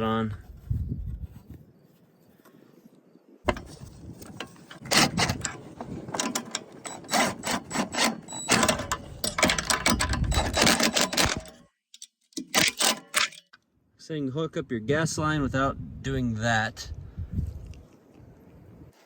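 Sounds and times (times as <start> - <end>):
small parts clicking and rattling: 3.5 - 13.6.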